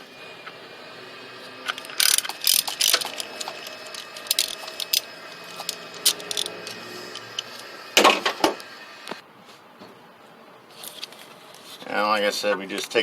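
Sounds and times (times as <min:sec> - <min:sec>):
ratchet clicking: 0:01.5 - 0:09.2.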